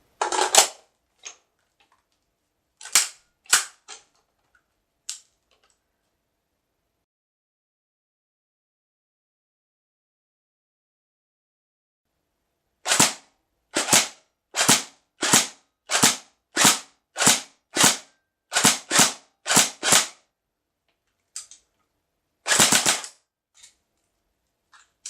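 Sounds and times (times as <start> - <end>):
airsoft gun firing shots: 12.9 - 20.2, 22.4 - 23.2.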